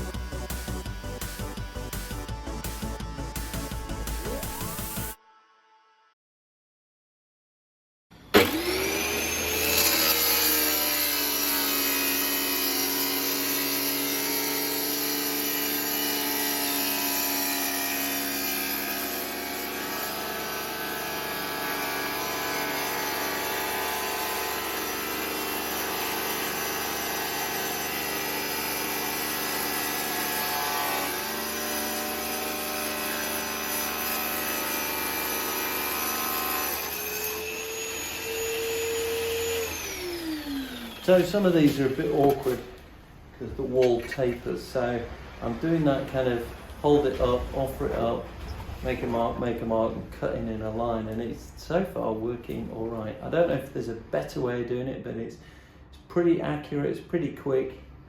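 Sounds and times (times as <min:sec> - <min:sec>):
electric tile saw cutting: 0:00.0 - 0:05.2, 0:08.2 - 0:42.8.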